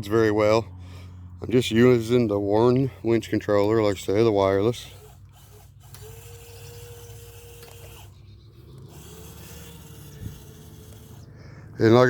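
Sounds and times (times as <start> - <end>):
electric winch motor whine: 3.9 - 12.0.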